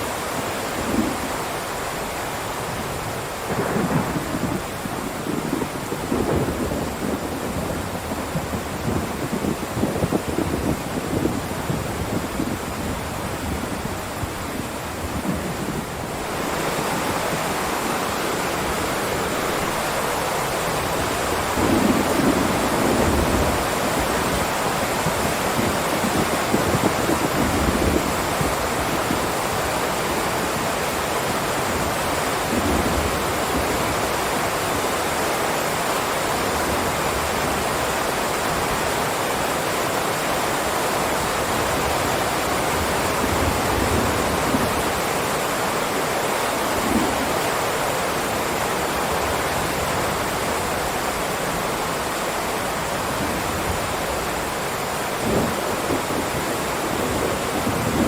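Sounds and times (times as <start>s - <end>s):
heavy rain: 0.0s - 58.0s
rolling thunder: 3.4s - 14.0s, 18.4s - 28.9s.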